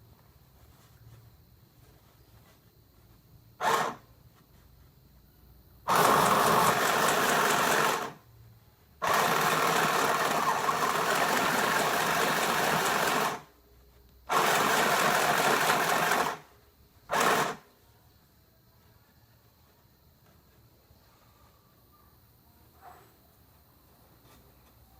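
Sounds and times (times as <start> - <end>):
sewing machine stitching: 3.6 - 4.0, 5.9 - 8.2, 9.0 - 13.5, 14.3 - 16.5, 17.1 - 17.6.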